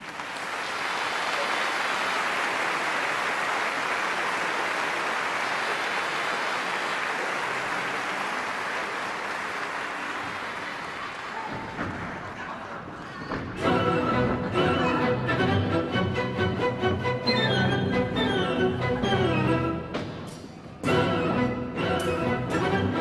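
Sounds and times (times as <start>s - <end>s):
audience applauding: 0.0s - 12.6s.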